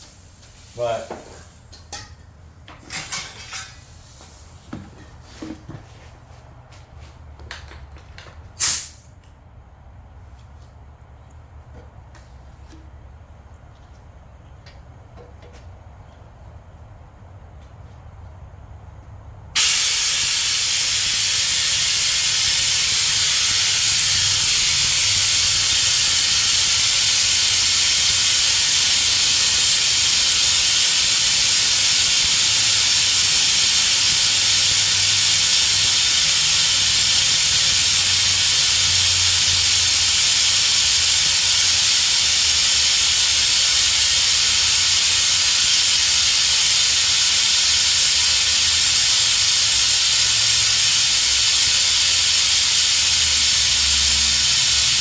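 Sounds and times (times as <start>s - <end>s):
loud steady hiss: 0.0s - 4.8s, 8.6s - 9.1s, 19.5s - 55.0s.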